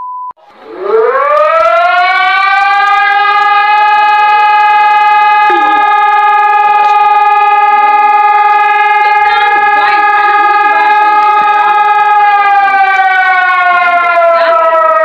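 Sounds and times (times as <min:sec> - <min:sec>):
air-raid siren wailing: 0:00.4 - 0:15.0
steady beep: 0:05.4 - 0:12.2.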